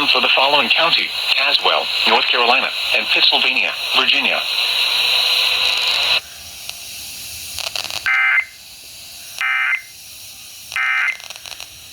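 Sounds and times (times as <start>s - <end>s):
buzzy digital data tones: 0.0s - 6.2s, 7.5s - 8.6s, 9.2s - 9.9s, 10.7s - 11.9s
faint radio hiss: 0.0s - 11.9s.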